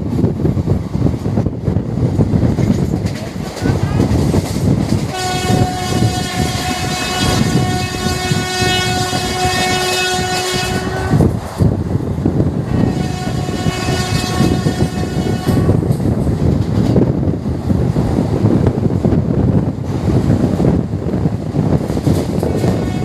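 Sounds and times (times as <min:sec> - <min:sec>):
train coaches rumbling on rails: 0:00.0 - 0:23.0
locomotive horn blasts: 0:05.1 - 0:11.3, 0:12.6 - 0:15.8, 0:22.6 - 0:23.0.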